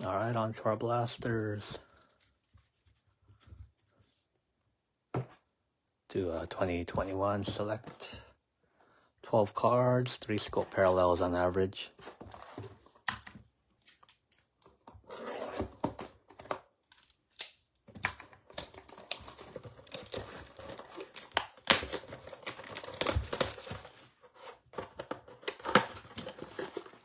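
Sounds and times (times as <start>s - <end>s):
plastic wrapping tearing and crinkling: 18.5s - 24.0s.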